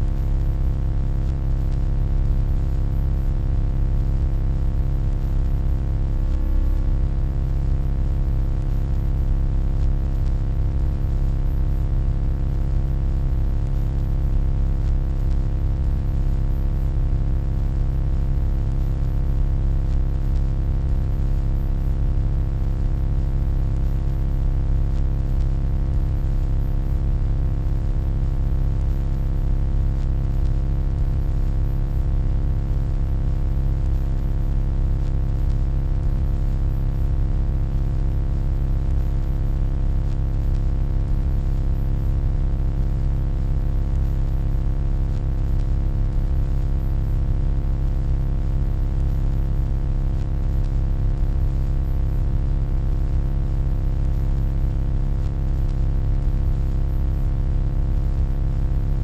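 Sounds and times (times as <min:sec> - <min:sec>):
deep electronic hum: 0:00.0 - 0:00.5, 0:05.2 - 0:07.8.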